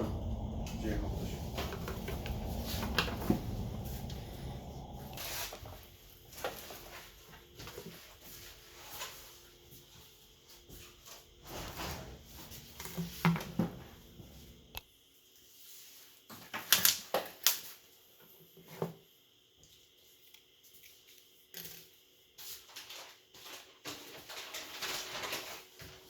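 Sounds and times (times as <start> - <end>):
low rumble: 0.0 - 6.5.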